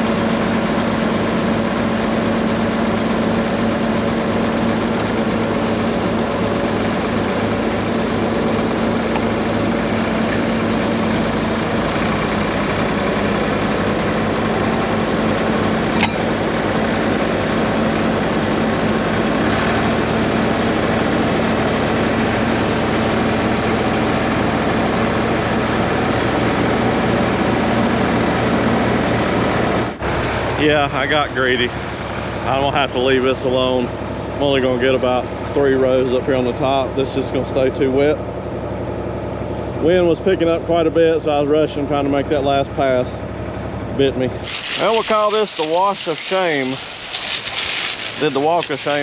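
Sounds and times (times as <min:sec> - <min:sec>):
tractor engine running: 0:00.0 - 0:35.8, 0:38.2 - 0:49.0.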